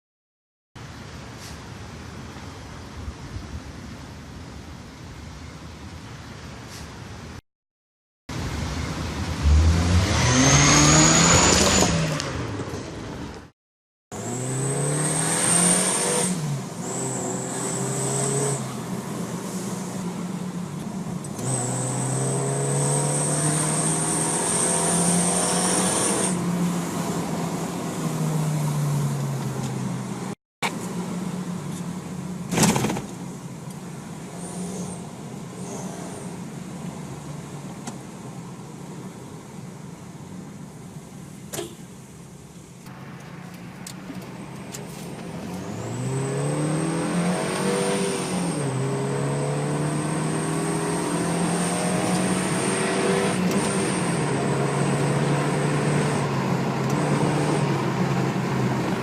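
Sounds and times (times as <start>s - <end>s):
car engine revving: 8.4s - 13.3s, 14.2s - 30.3s, 45.3s - 59.0s.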